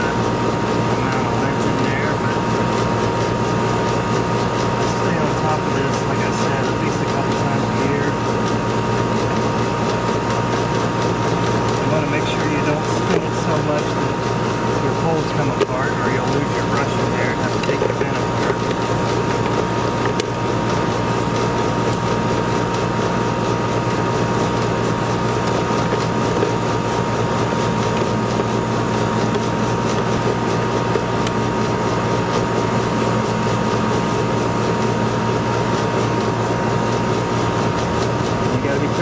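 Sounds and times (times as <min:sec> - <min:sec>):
air conditioner hum and fan: 0:00.0 - 0:39.0.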